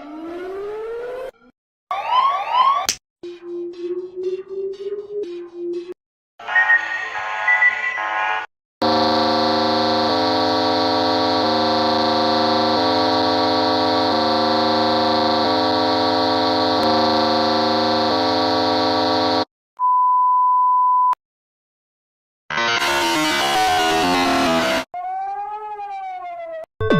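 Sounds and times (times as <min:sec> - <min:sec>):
pure beep: 0:06.4 - 0:08.1, 0:19.8 - 0:21.2
two-pitch electronic alarm tone: 0:06.4 - 0:19.5.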